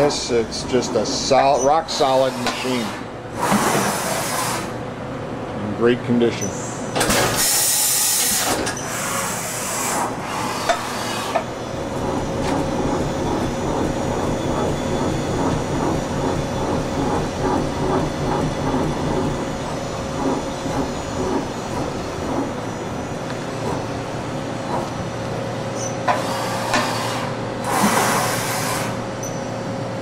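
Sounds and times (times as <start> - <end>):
rhythmic machine running: 0.0 - 2.4, 11.5 - 25.8
machine whine: 0.0 - 4.4, 6.6 - 29.7
machine hissing bursts: 7.1 - 13.9, 26.1 - 29.0.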